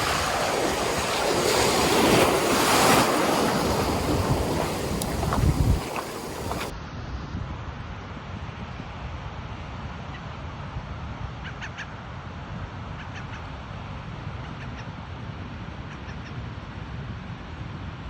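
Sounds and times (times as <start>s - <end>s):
rough surf: 0.0s - 6.7s
wind buffeting microphone: 0.0s - 6.7s.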